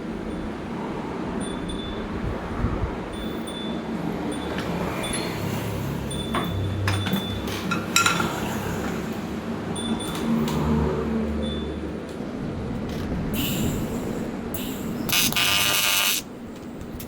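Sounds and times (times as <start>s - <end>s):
workshop background noise: 4.4s - 11.0s, 12.0s - 17.0s
low buzzing hum: 15.1s - 16.4s.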